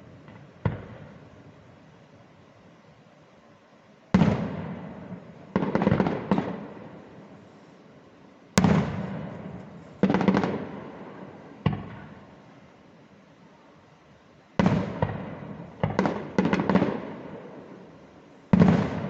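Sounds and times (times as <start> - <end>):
firework crackle: 0.0 - 19.0
firework bangs echoing: 0.2 - 1.3, 4.1 - 7.1, 8.6 - 12.2, 14.6 - 17.9, 18.5 - 19.0.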